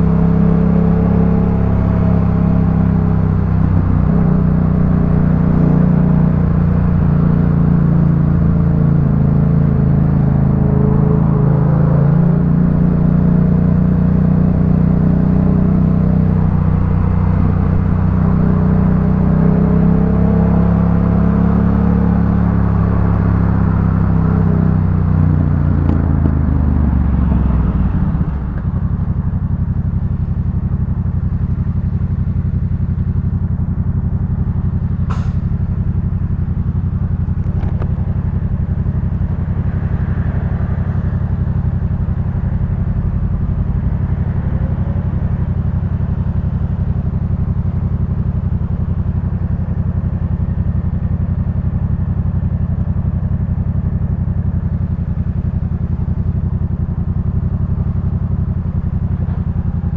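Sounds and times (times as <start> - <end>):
motorcycle engine idling: 20.8 - 59.9.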